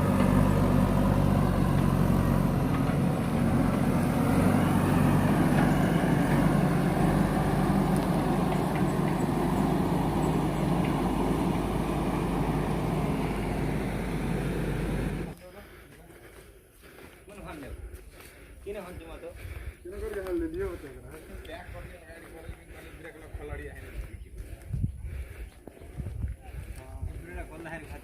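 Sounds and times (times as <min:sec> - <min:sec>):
heavy diesel engine droning: 0:00.0 - 0:17.0.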